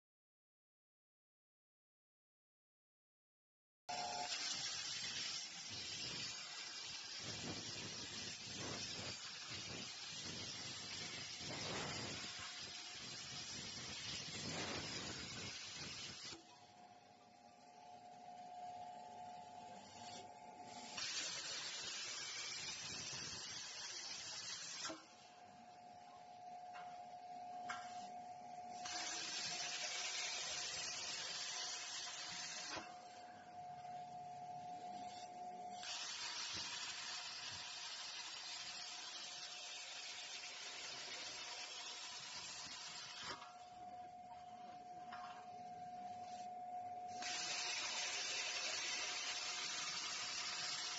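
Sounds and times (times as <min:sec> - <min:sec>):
plasma torch hissing: 0:04.2 - 0:16.4, 0:19.9 - 0:25.1, 0:28.7 - 0:32.9, 0:35.1 - 0:43.5, 0:47.1 - 0:50.9
steady high whine: 0:06.0 - 0:37.6, 0:39.5 - 0:50.9.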